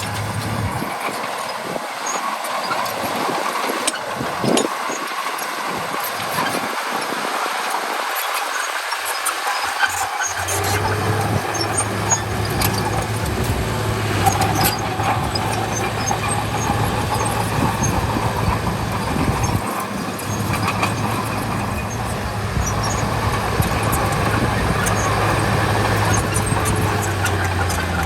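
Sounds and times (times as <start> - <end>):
diesel engine running under load: 0.0 - 28.0
high squeaks and clicks: 8.2 - 28.0.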